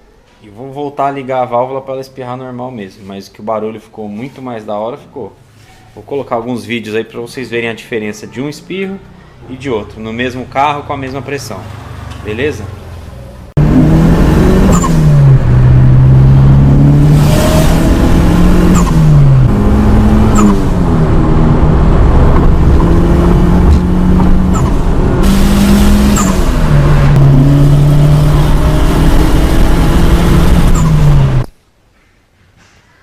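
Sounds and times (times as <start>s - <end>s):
turbo boost release: 13.6s - 31.5s
turbocharged car engine revving: 13.6s - 31.5s.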